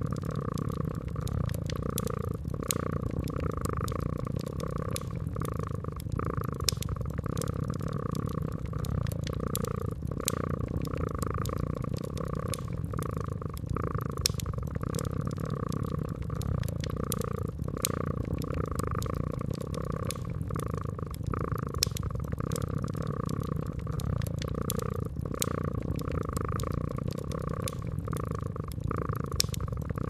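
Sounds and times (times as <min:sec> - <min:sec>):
cat purring: 0:00.0 - 0:30.0
wood fire crackling: 0:00.0 - 0:30.0.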